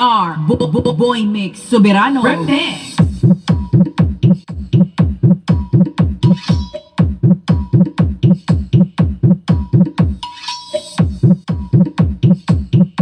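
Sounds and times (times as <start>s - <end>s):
electronic dance music: 0.0s - 13.0s
heavy kick drum thumps: 3.0s - 10.2s, 11.0s - 13.0s.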